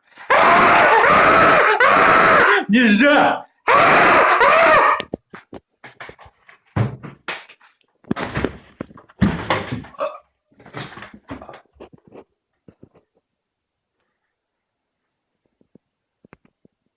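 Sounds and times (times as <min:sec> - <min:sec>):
irregular knocks and thuds: 0:05.1 - 0:10.0.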